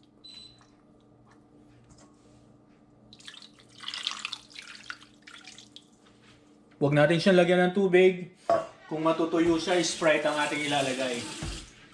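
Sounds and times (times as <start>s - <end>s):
liquid sloshing and splashing: 3.1s - 6.0s.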